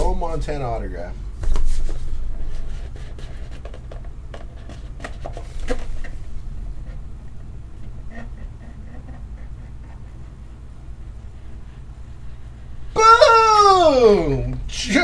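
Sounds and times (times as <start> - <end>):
low steady hum: 0.0 - 15.0
trading cards being handled: 1.4 - 6.3.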